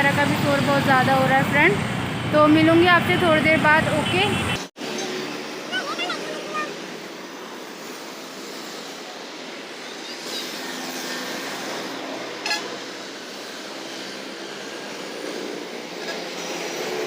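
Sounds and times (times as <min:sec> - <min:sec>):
vehicles passing: 0:00.0 - 0:17.0
car horn: 0:03.9 - 0:04.7.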